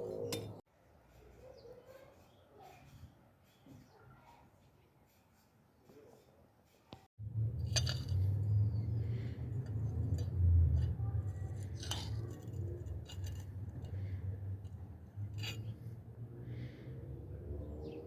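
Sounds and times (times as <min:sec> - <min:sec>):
low rumble: 0:07.2 - 0:17.8.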